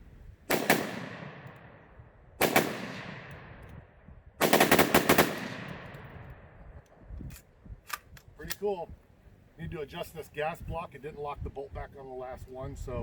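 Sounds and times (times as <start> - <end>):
gunshots with echoing tail: 0.5 - 6.6.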